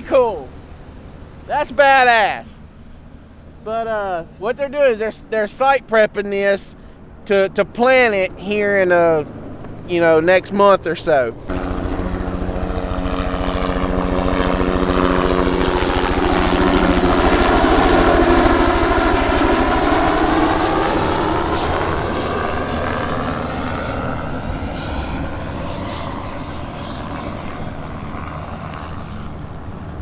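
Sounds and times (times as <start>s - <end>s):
helicopter flying low past: 0.0s - 30.0s.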